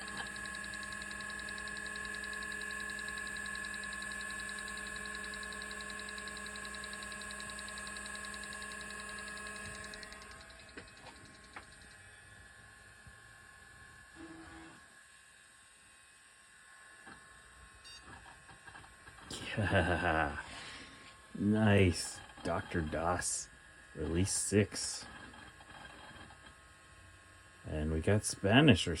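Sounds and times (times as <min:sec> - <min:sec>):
hard drive sharp clicks: 0:00.0 - 0:12.0
hard drive whine and hum: 0:00.0 - 0:29.0.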